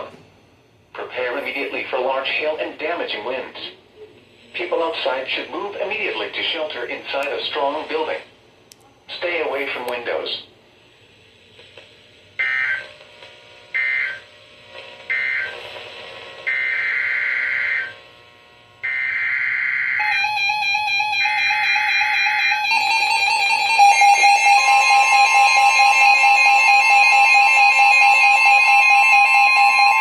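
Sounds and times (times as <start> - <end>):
two-tone attention signal: 20.0 - 30.0.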